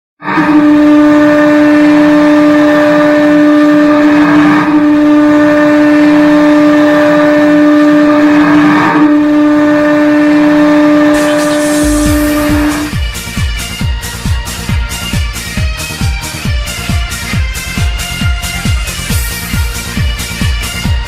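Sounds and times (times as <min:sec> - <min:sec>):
goal horn blast: 0:00.2 - 0:15.4.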